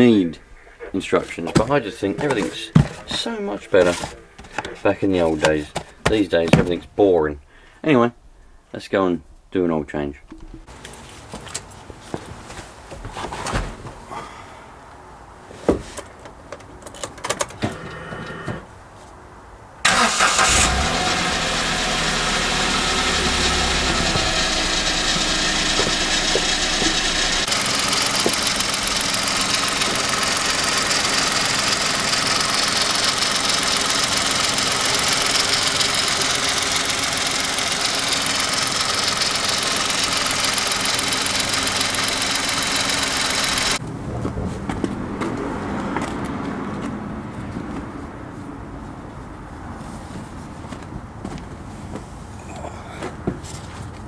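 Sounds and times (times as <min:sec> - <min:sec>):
car engine starting and running: 0:00.9 - 0:06.9, 0:19.8 - 0:46.8
clicks and knocks: 0:01.2 - 0:06.9.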